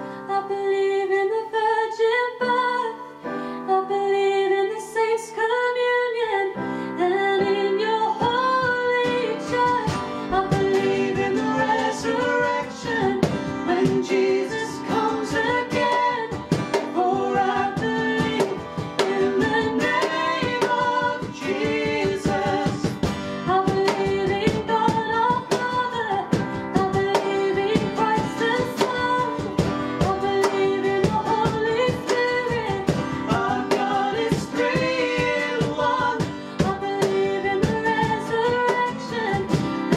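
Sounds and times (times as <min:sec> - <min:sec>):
woman singing: 0:00.0 - 0:39.9
strummed guitar: 0:07.4 - 0:39.9.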